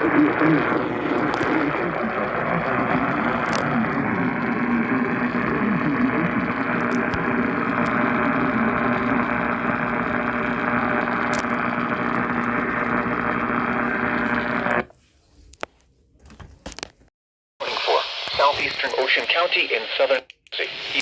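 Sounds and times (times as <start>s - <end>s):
low hum: 0.0s - 14.9s
radio static hiss: 0.0s - 14.9s, 17.6s - 21.0s.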